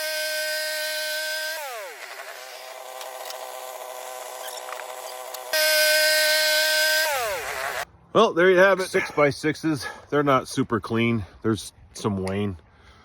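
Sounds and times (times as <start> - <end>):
sawmill engine running: 0.0 - 7.8.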